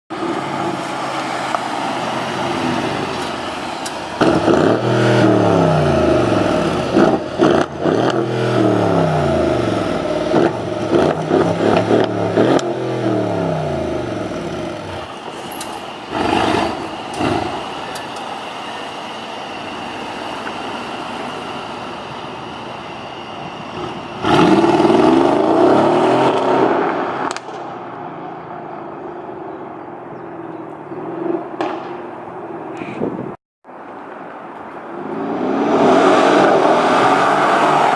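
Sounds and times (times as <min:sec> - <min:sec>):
car engine revving hard: 0:04.2 - 0:15.0, 0:16.1 - 0:18.0, 0:23.7 - 0:27.4, 0:35.2 - 0:37.9
exhaust crackles and pops: 0:26.3 - 0:27.8.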